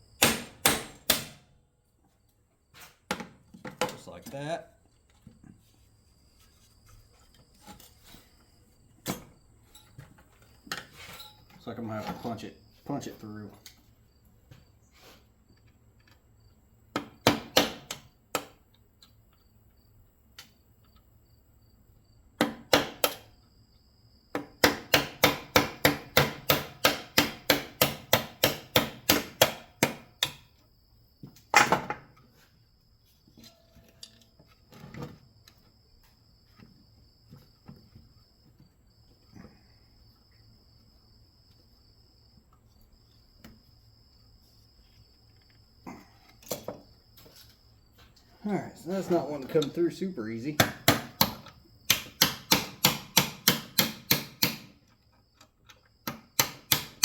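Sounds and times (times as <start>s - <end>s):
hammer striking steel punch: 0.2s - 1.4s, 24.6s - 30.4s, 50.6s - 54.7s.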